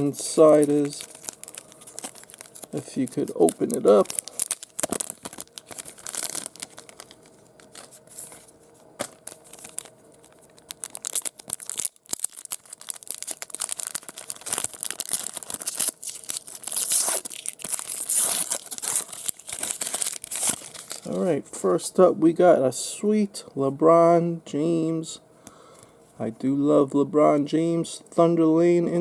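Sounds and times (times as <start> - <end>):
packaging being torn and crinkled: 0.0 - 21.2.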